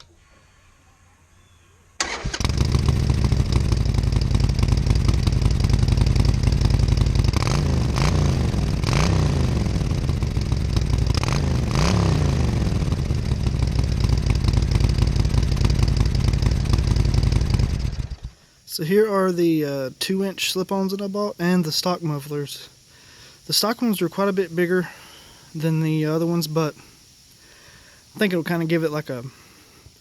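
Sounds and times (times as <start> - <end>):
motorcycle engine idling and revving: 2.2 - 18.4.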